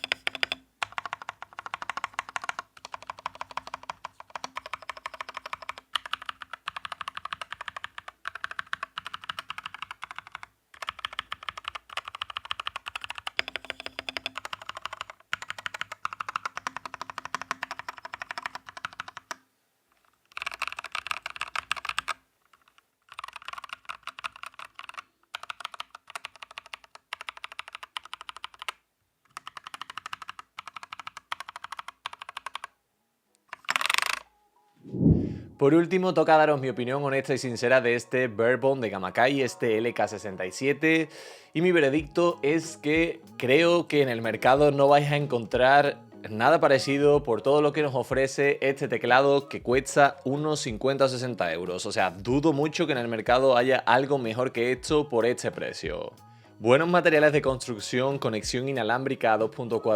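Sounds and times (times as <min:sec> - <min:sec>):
mechanical keyboard typing: 0:00.0 - 0:19.4, 0:20.3 - 0:32.7, 0:33.5 - 0:34.3.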